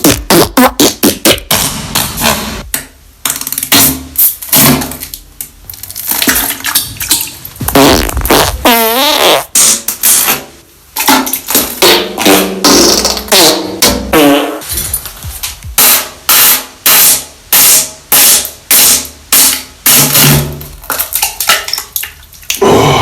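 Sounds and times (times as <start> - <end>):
farts: 0.0 - 2.6, 7.6 - 10.3, 11.8 - 14.7.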